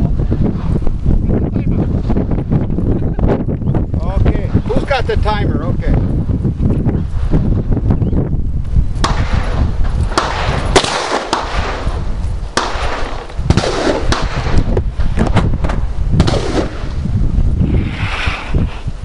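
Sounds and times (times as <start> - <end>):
wind buffeting microphone: 0.0 - 19.0
rifle shots: 9.0 - 14.7, 16.2 - 17.0.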